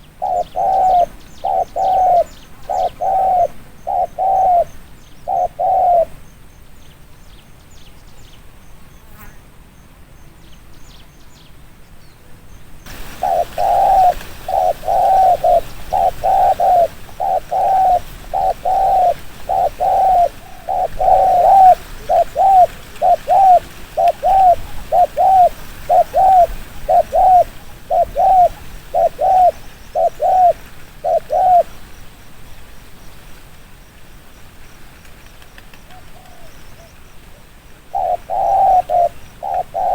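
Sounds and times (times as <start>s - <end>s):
dove cooing: 0.0s - 6.2s, 12.9s - 31.8s, 37.3s - 39.9s.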